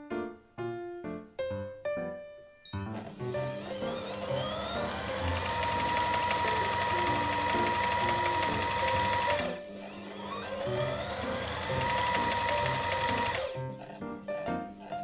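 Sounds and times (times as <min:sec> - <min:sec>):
sewing machine motor whine: 0:03.0 - 0:13.8.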